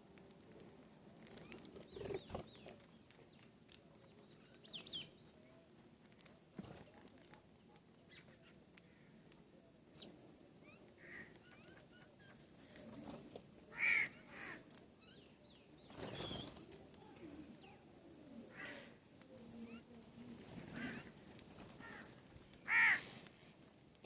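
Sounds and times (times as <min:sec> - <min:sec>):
birds calling: 0:13.7 - 0:16.6, 0:20.5 - 0:23.2.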